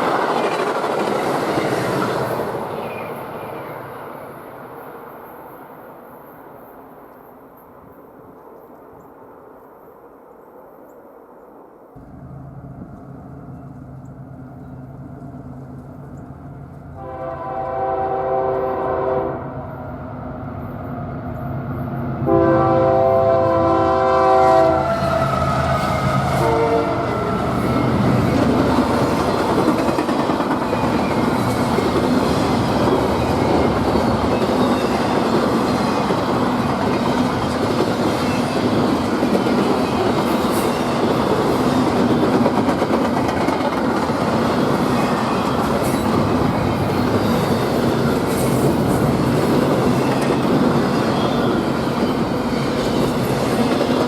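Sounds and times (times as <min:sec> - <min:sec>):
train wheel and rail noise: 0:00.0 - 0:54.0
diesel locomotive engine: 0:12.0 - 0:54.0
train air horn blasts: 0:17.0 - 0:19.9, 0:22.2 - 0:27.7.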